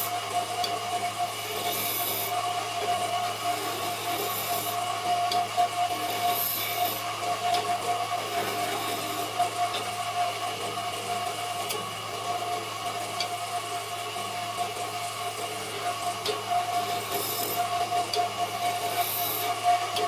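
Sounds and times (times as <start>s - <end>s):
wood lathe humming: 0.0s - 20.0s
turning tool scraping wood: 1.6s - 2.3s, 3.5s - 4.8s, 8.4s - 9.3s, 16.8s - 17.7s, 18.7s - 19.6s.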